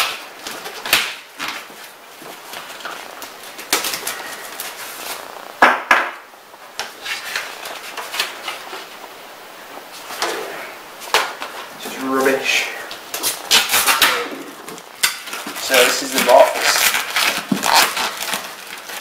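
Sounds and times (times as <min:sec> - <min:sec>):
knife opening cardboard parcel: 0:13.1 - 0:19.0.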